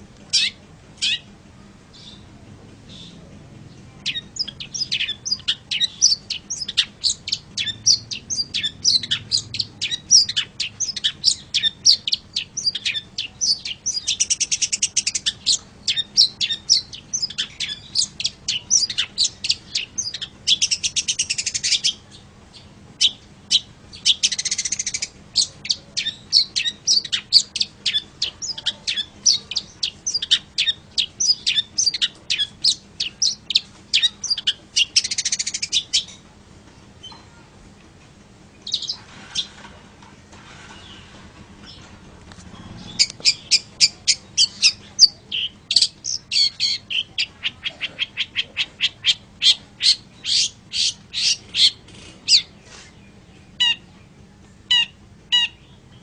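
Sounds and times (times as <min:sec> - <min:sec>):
bird harsh rasping calls: 0:04.0 - 0:22.1, 0:23.0 - 0:36.2, 0:42.6 - 0:53.0
bird high sharp chirps: 0:04.0 - 0:36.2, 0:38.6 - 0:39.6, 0:42.5 - 0:53.9.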